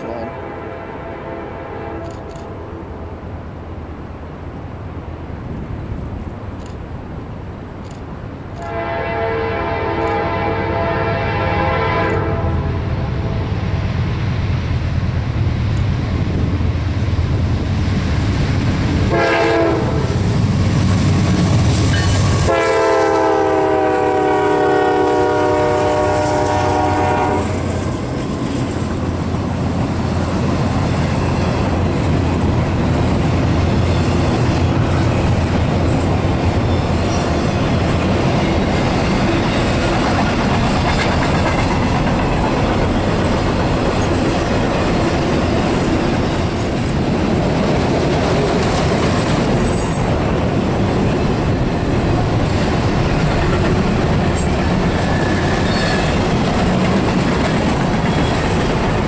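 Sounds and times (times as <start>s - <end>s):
locomotive horn blasts: 0.0s - 2.3s, 8.6s - 12.8s, 19.1s - 20.2s, 22.4s - 27.7s
passing train rumble and clatter: 0.0s - 59.0s.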